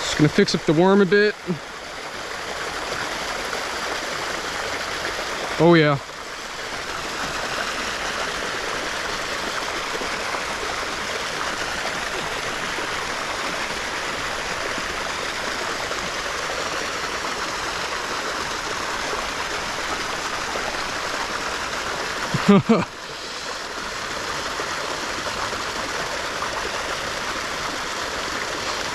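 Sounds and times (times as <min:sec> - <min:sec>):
creek water trickling: 0:00.0 - 0:28.9.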